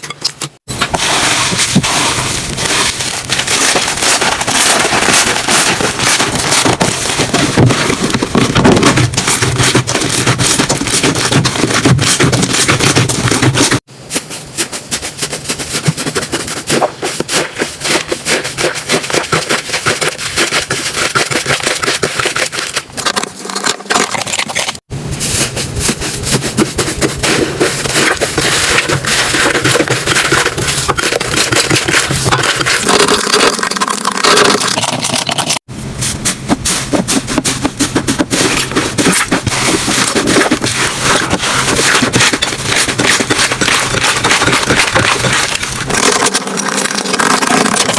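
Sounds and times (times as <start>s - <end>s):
slime crackling and popping: 36.8s - 47.9s.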